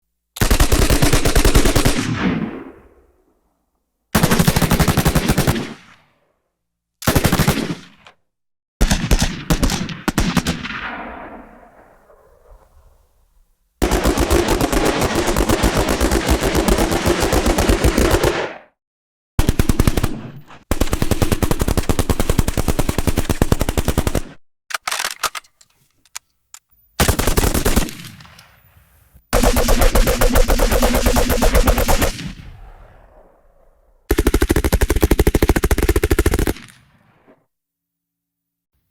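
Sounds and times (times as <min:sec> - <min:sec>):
machine gun bursts: 0:13.8 - 0:18.4, 0:29.3 - 0:32.2.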